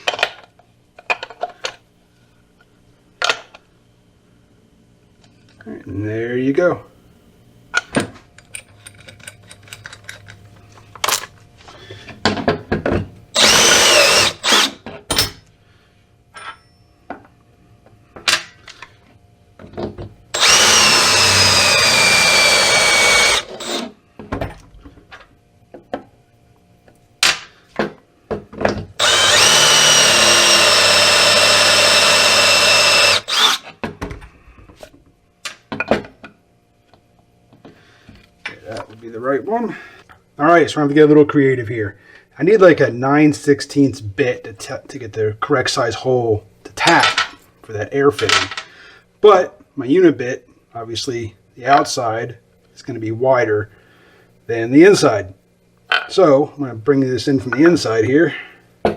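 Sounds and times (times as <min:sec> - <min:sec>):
power drill whining: 0:13.4 - 0:14.8, 0:20.4 - 0:23.9, 0:29.0 - 0:33.7.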